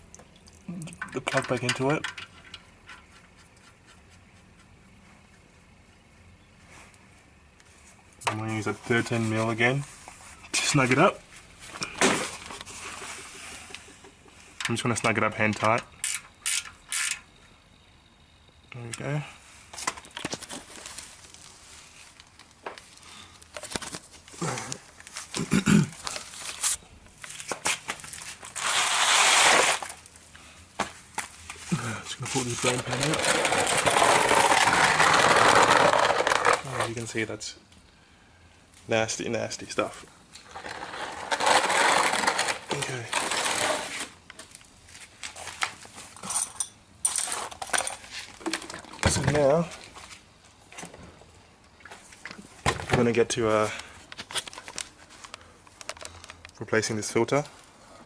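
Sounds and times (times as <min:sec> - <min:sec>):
tools clicking and knocking: 0:00.9 - 0:03.8
loud scraping rustle: 0:26.0 - 0:30.1, 0:31.3 - 0:37.1, 0:40.4 - 0:44.2
metallic clinks and rattles: 0:46.1 - 0:49.0.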